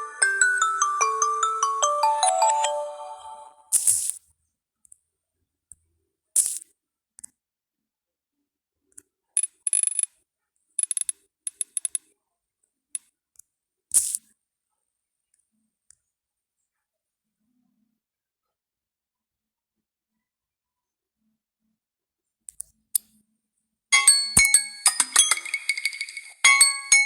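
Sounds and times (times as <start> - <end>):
phone alert chime: 0.0 - 3.7, 24.0 - 27.0
high-pitched clinks: 24.0 - 27.0.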